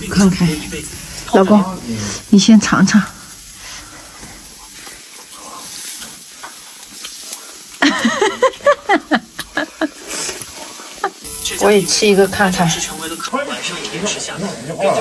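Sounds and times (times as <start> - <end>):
person speaking: 0.0 - 3.3, 11.2 - 13.3
meat sizzling on a grill: 0.0 - 15.0.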